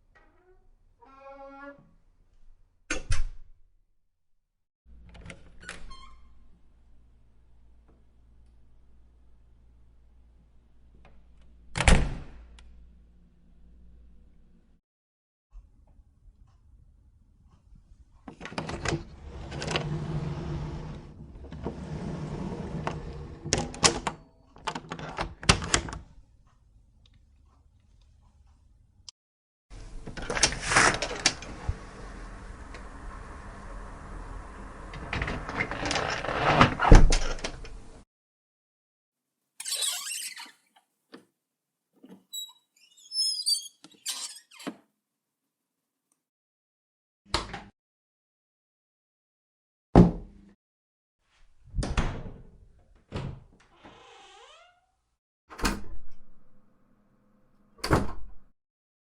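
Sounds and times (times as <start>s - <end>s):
door scraping: 18.9s - 23.8s, 29.8s - 37.6s
hinge squeaking: 39.6s - 40.7s, 42.0s - 44.8s.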